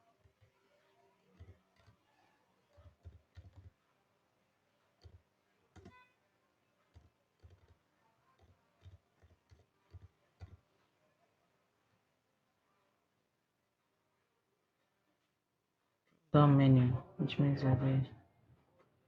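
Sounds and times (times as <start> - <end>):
keyboard typing: 1.3 - 2.0, 2.7 - 3.8, 5.0 - 6.0, 6.9 - 7.8, 8.4 - 10.6.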